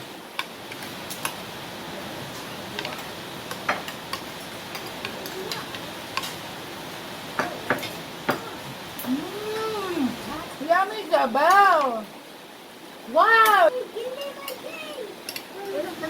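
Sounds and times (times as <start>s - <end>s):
steady background hiss: 0.0s - 16.0s
cutlery clinking on plates: 7.4s - 8.5s, 15.2s - 15.5s.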